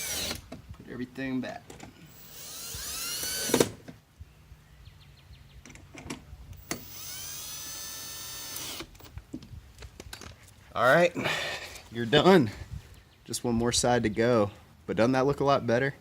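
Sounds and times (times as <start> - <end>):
cordless drill whining: 0.0 - 0.4, 2.1 - 3.8, 6.6 - 9.1.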